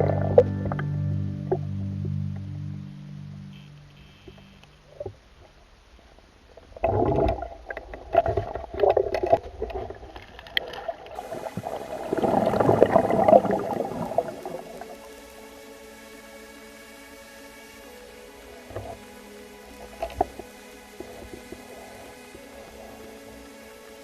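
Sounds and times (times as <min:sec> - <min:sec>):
music: 0:00.0 - 0:04.8, 0:11.3 - 0:24.0
river water sloshing and gurgling: 0:06.6 - 0:24.0.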